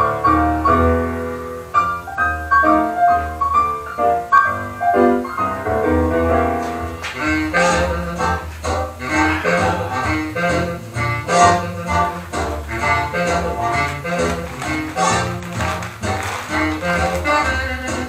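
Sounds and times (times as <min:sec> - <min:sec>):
piano melody: 0:00.0 - 0:18.0
reed or brass sounds: 0:06.9 - 0:18.0.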